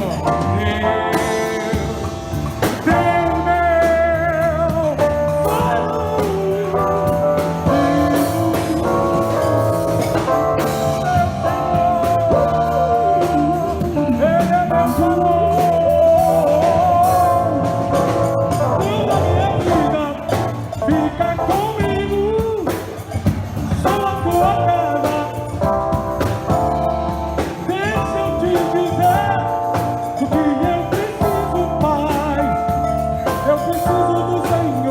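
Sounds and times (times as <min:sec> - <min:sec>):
live band playing worship ballad: 0:00.0 - 0:34.9.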